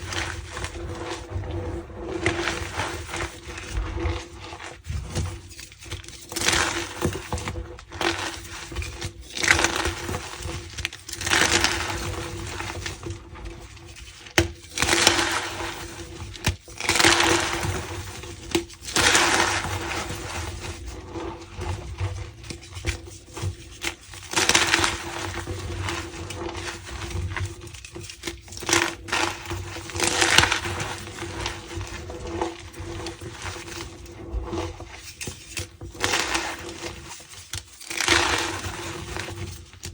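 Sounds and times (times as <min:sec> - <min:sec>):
chalk being crushed: 0:14.3 - 0:21.3, 0:22.4 - 0:39.9.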